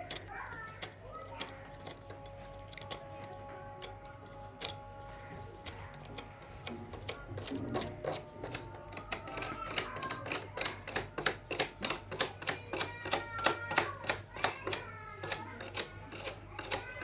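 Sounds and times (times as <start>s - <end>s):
comb clicking through metal fins: 0.0s - 4.8s, 5.6s - 17.0s.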